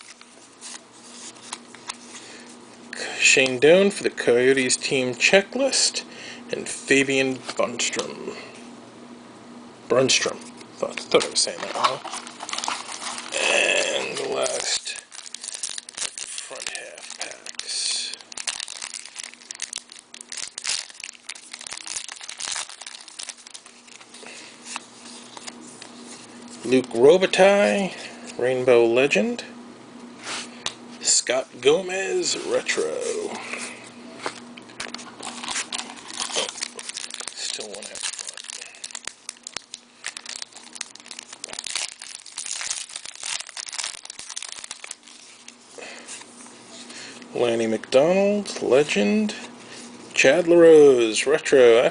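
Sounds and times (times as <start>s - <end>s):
card pack wrappers crinkling: 10.4s - 27.7s, 32.2s - 46.9s.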